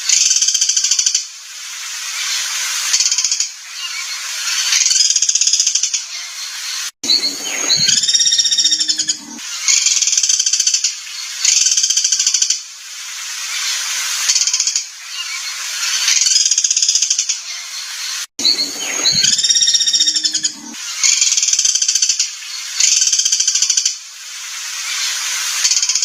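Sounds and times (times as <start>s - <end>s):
songbird trilling and chattering: 7.0s - 9.4s, 18.4s - 20.8s.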